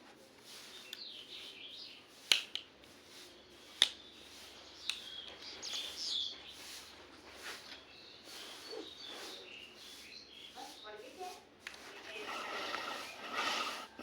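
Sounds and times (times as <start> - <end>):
bird chirps: 0.7 - 2.1, 3.3 - 6.9, 7.5 - 11.0.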